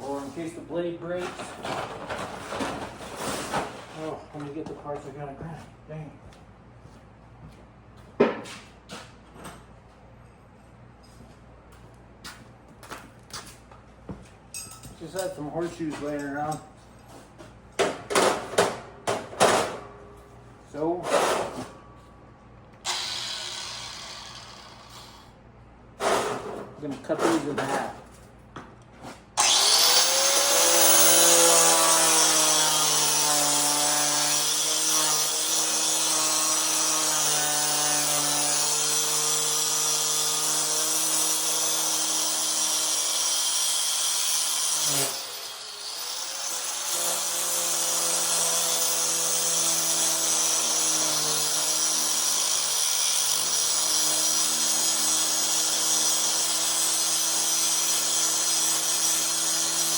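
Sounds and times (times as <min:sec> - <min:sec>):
angle grinder cutting steel: 0:22.9 - 0:25.3, 0:29.4 - 0:59.9.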